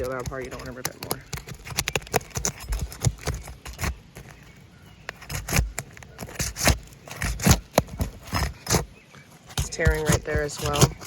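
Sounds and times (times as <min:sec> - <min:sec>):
roof shingles being pried and torn: 0:00.0 - 0:11.0.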